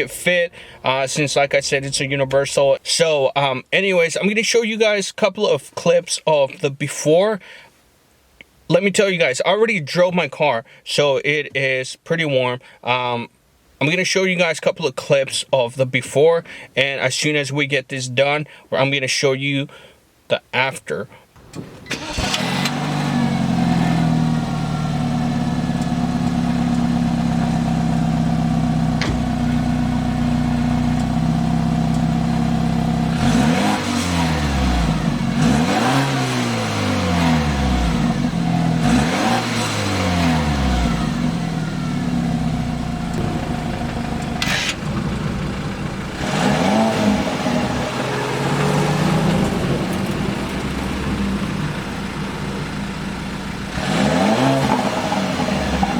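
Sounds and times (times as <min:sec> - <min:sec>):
car engine idling and revving: 0:21.4 - 0:55.9.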